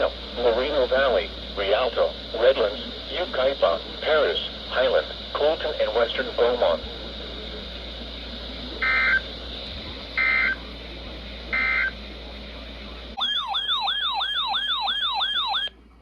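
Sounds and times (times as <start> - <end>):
digital data buzzes: 8.8 - 9.3, 11.5 - 12.0.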